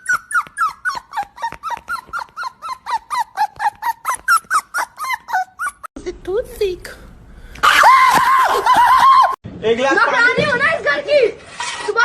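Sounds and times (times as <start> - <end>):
squeaky dog toy squeaking: 0.0 - 5.9.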